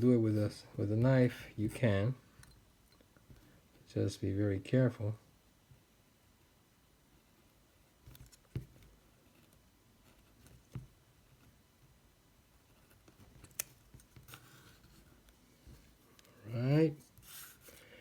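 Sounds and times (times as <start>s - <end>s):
faint paper rustling: 12.6s - 18.0s.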